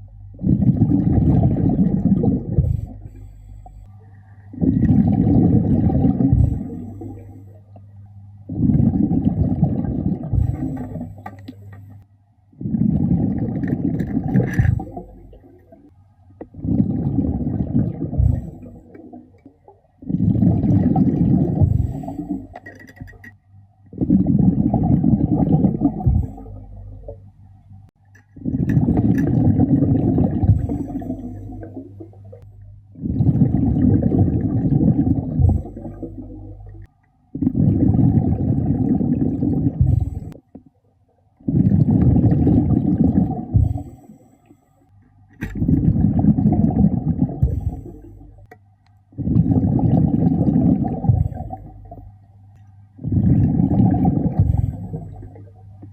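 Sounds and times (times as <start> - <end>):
gurgling bubbles underwater: 0.0 - 12.0, 12.6 - 27.4, 28.3 - 40.7, 41.3 - 44.3, 45.4 - 55.9
diver inhaling through regulator: 20.1 - 22.6, 41.5 - 44.9.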